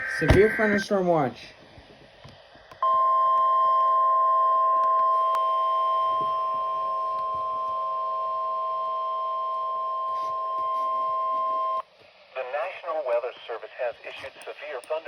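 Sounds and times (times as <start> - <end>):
two-tone electronic alert tone: 0.0 - 0.9.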